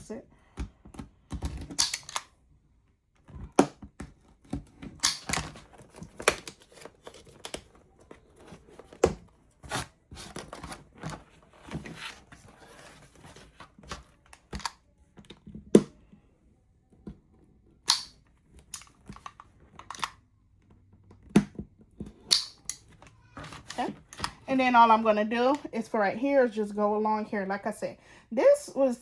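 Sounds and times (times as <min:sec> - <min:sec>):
craft tools clicking and tapping: 0:21.2 - 0:24.4.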